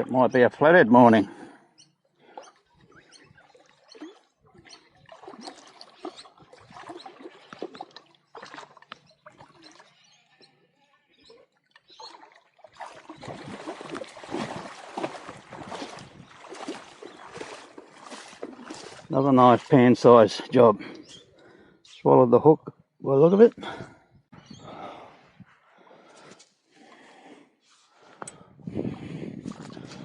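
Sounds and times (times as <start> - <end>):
shallow water splashing: 2.2 - 21.7.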